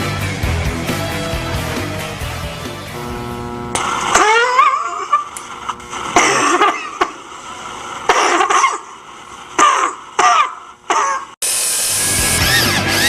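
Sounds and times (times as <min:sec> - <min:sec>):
recorded human coughing: 0:06.0 - 0:07.3, 0:08.1 - 0:09.0, 0:09.6 - 0:11.4.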